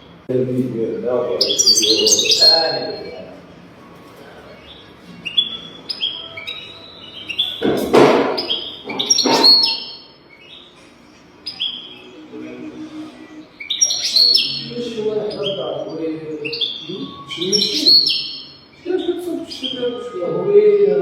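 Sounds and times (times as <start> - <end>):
finch singing: 0.0 - 3.6, 4.3 - 21.0.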